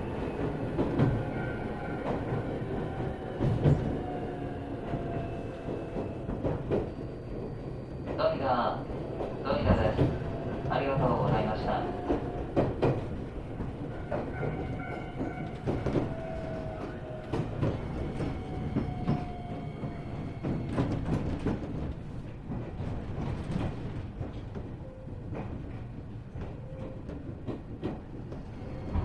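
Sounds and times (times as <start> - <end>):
train running rumble: 0.0 - 29.0.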